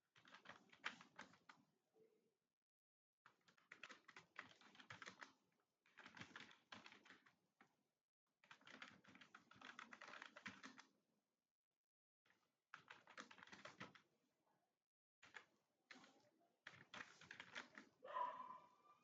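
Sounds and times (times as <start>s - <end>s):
typing on computer keyboard: 0.1s - 1.6s, 3.3s - 7.4s, 8.4s - 10.9s, 12.3s - 14.1s, 15.2s - 18.0s.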